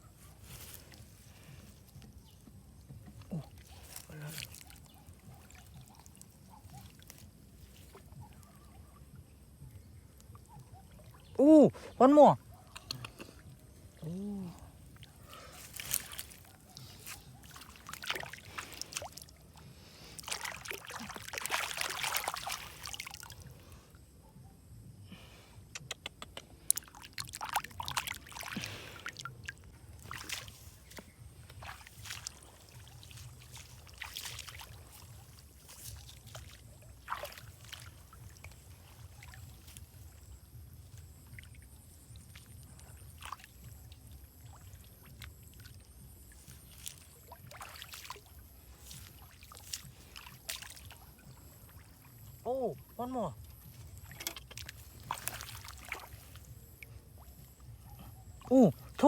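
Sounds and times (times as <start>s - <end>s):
shallow water sloshing and splashing: 14.7s - 23.7s, 26.7s - 58.9s
water dripping: 26.1s - 30.5s, 31.4s - 52.5s.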